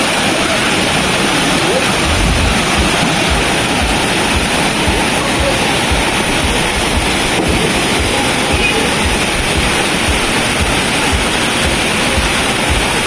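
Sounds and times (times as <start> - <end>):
waterfall pouring: 0.0 - 13.0
wind buffeting microphone: 0.0 - 13.0.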